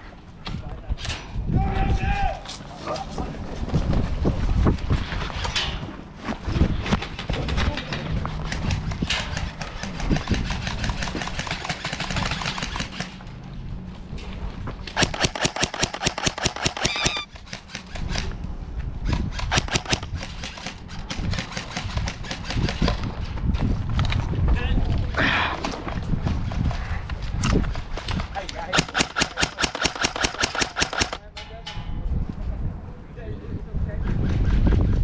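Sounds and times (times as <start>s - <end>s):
airsoft guns firing: 14.9s - 18.2s, 19.4s - 22.9s, 28.7s - 31.2s.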